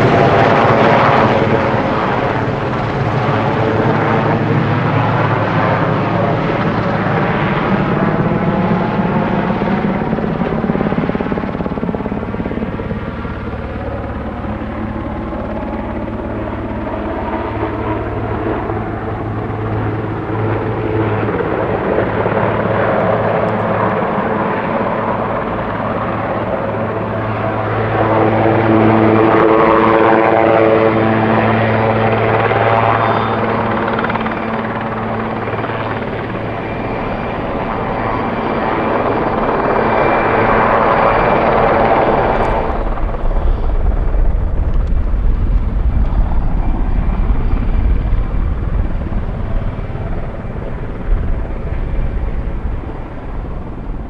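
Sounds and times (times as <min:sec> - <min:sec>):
helicopter rotor and turbine: 0:00.0 - 0:54.0
deep rumble: 0:39.4 - 0:54.0.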